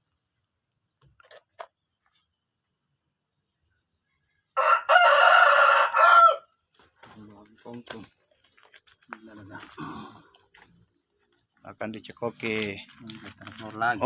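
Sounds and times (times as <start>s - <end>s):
rooster crowing: 4.6s - 6.6s.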